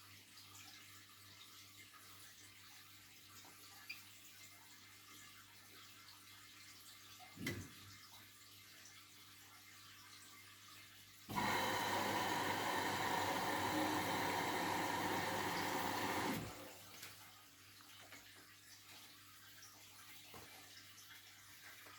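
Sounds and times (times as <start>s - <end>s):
water trickling and dripping: 0.0s - 21.9s
water rushing in washing machine: 11.3s - 17.0s.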